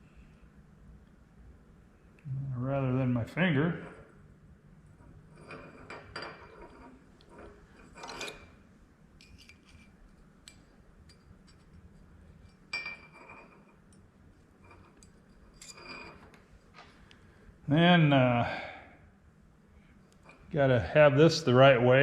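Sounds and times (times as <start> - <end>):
steel parts clinking and scraping: 5.0 - 8.6, 9.2 - 16.4.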